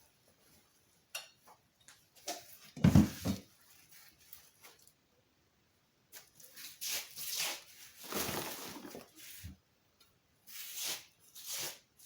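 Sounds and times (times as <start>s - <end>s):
packaging crinkling: 7.8s - 9.2s.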